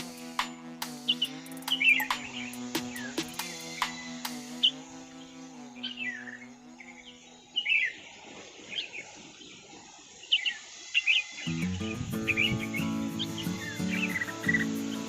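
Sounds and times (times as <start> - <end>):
background music: 0.0 - 7.4, 11.5 - 15.0
birds chirping: 1.0 - 15.0.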